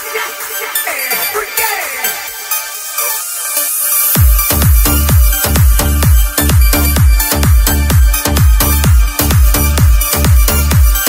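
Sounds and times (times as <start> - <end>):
electronic dance music: 0.0 - 11.0
deep kick drum: 4.2 - 11.0.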